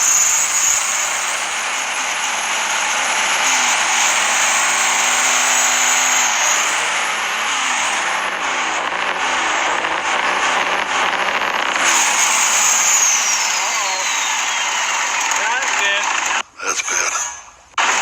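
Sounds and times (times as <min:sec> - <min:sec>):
diesel truck engine running rough: 0:00.0 - 0:16.5, 0:17.6 - 0:18.0
high whistle: 0:11.9 - 0:15.3.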